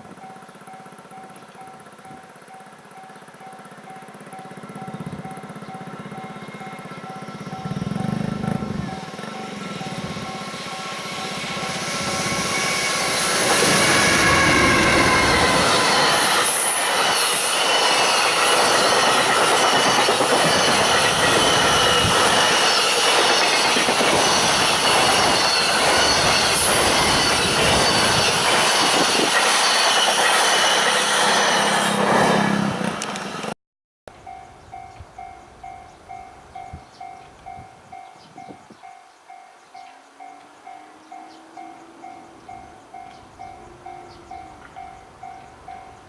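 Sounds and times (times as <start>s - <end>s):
crossing bell ringing: 0.0s - 31.8s, 34.1s - 46.0s
train wheels rushing on rails: 0.0s - 33.6s.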